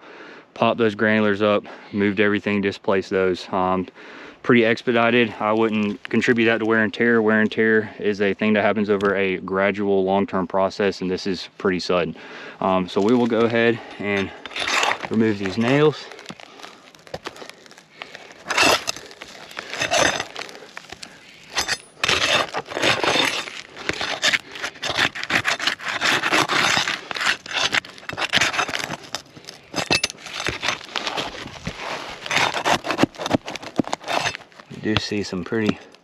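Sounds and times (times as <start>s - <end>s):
shingles scraping and crackling: 12.9s - 36.0s.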